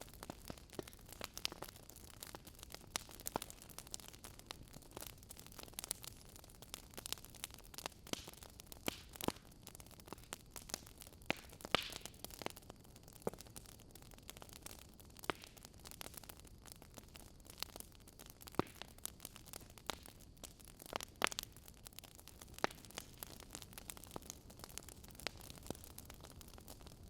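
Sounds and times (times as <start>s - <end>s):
wood fire hissing: 0.0s - 13.7s
fire pops and snaps: 0.0s - 27.0s.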